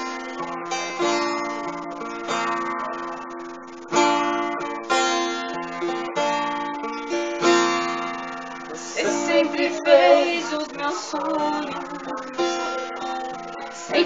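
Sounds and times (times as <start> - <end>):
acoustic guitar strumming chords: 0.0 - 14.0.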